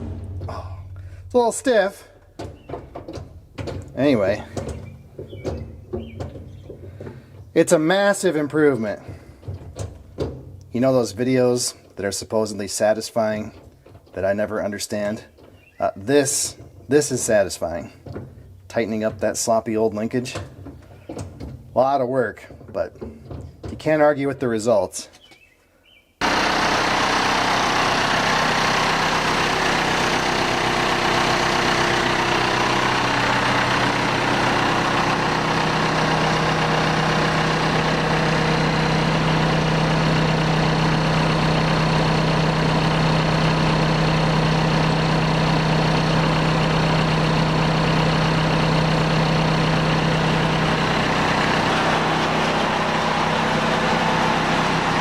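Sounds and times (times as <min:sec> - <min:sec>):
low hum: 0:00.0 - 0:06.4
backhoe engine running: 0:00.0 - 0:24.1, 0:26.2 - 0:55.0.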